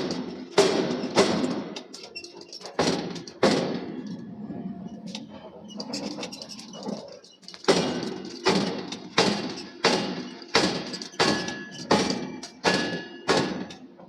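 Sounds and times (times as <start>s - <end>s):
hammer striking steel with ring: 9.2s - 13.8s.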